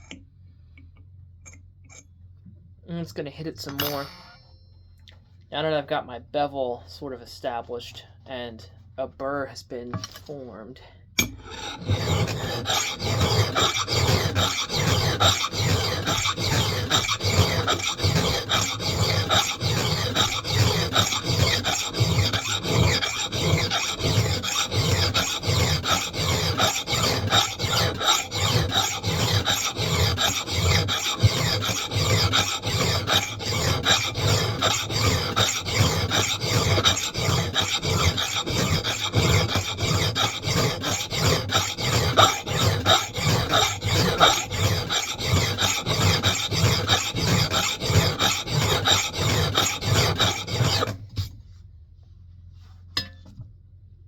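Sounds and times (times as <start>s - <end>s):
hand file rasping on steel: 11.2s - 51.1s.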